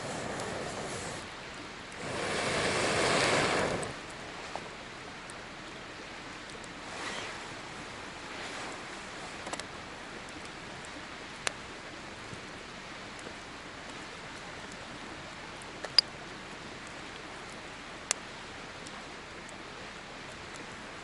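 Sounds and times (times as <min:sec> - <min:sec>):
wind gusts rushing: 0:02.0 - 0:04.0
faint clicks: 0:09.4 - 0:11.6, 0:15.6 - 0:19.6.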